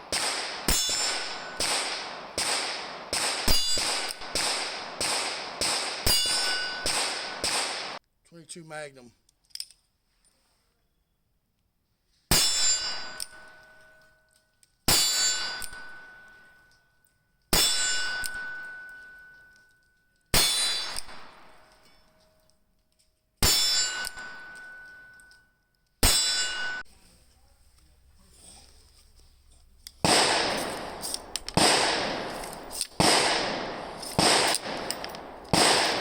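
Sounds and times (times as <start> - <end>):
steel target ringing clang: 0.0 - 2.2, 3.4 - 4.4, 6.0 - 7.5, 12.3 - 13.8, 14.9 - 16.5, 17.6 - 19.4, 20.4 - 21.2, 23.4 - 25.3, 26.0 - 26.8.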